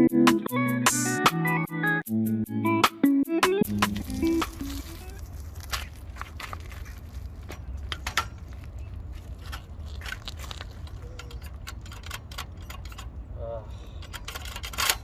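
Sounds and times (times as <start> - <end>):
steady low rumble: 3.6 - 15.0
bike lock clicking and rattling: 7.5 - 8.6, 9.4 - 13.2, 13.9 - 15.0.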